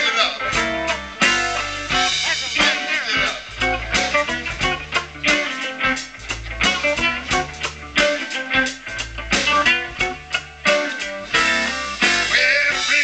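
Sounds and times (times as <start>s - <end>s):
bass guitar: 0.0s - 13.0s
drums: 0.0s - 13.0s
guitar: 0.0s - 13.0s.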